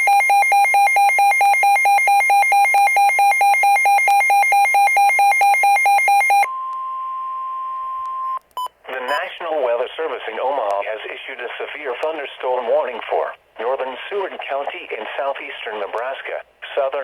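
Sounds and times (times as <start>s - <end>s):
rapid beeping alarm: 0.0s - 6.5s
faint radio hiss: 6.5s - 17.0s.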